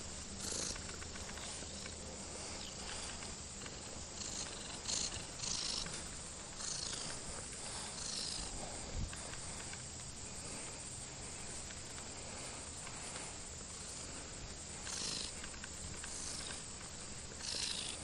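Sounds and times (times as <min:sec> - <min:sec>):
cat purring: 0:00.3 - 0:09.7, 0:14.8 - 0:16.7, 0:17.3 - 0:18.0.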